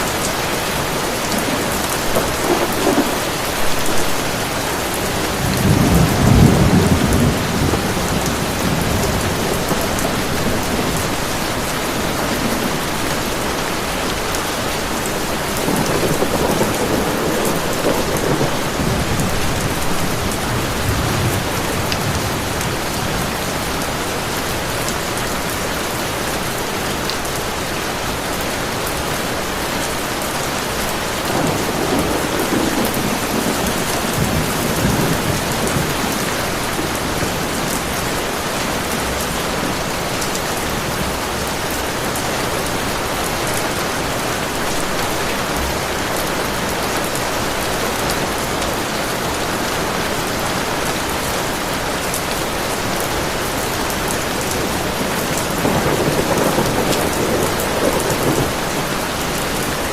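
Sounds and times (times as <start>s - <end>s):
heavy rain: 0.0s - 59.9s
low roll of thunder: 1.3s - 13.8s, 14.8s - 23.6s, 31.1s - 40.2s, 53.9s - 59.8s.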